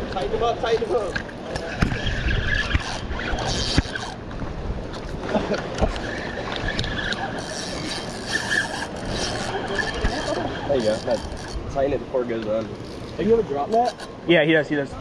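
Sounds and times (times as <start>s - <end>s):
rushing water: 0.0s - 15.0s
wind noise on microphone: 1.5s - 7.2s.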